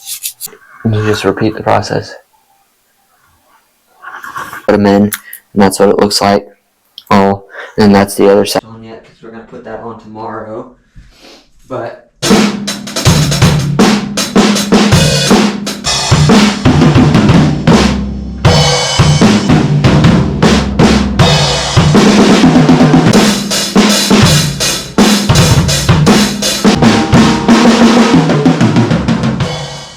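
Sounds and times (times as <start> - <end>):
drum kit playing: 12.2 - 29.9.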